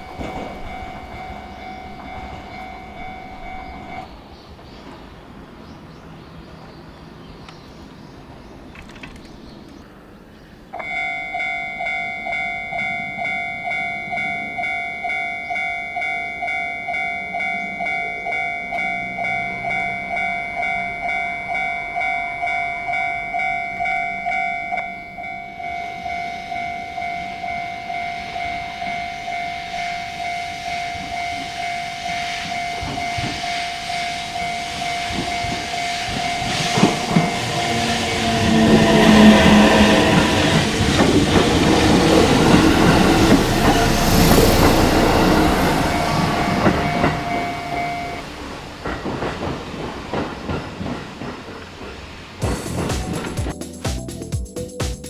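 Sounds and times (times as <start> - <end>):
level crossing warning bell: 0.0 - 4.2, 10.8 - 51.3
approaching train rumble with knocks: 0.0 - 9.8, 27.5 - 54.8.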